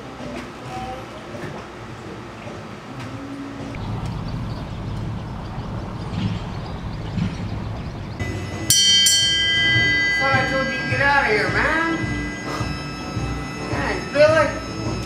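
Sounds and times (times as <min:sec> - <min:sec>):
low rumble: 0:03.7 - 0:08.6
chime-like music: 0:08.2 - 0:15.0.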